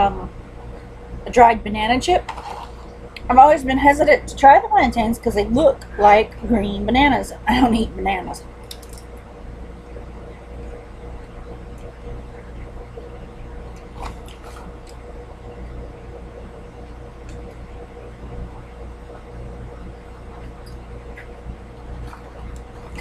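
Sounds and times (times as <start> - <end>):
electrical hum with whine: 0.0 - 23.0.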